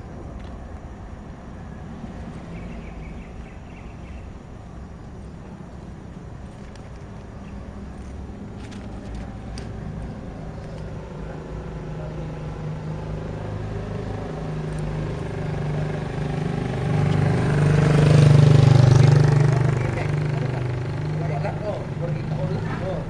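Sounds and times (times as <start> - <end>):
vehicle engine passing by: 1.5 - 4.4, 5.2 - 23.0.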